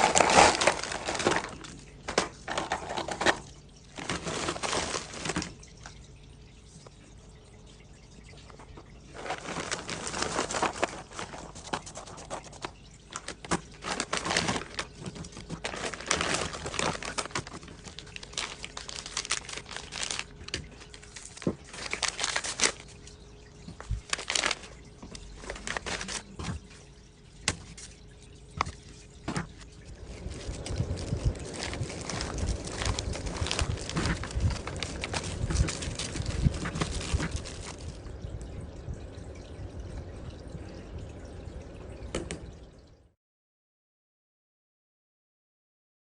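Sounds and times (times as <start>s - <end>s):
rustling and clatter: 0.0s - 5.6s, 9.1s - 22.8s, 28.6s - 38.0s
water splashing: 0.0s - 42.8s
faint steady hum: 0.0s - 43.1s.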